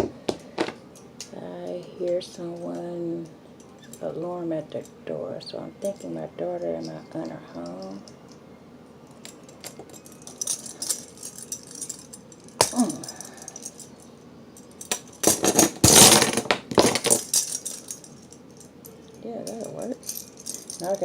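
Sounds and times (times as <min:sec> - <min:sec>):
metal clinking and rattling: 0:05.8 - 0:08.4, 0:09.1 - 0:21.0.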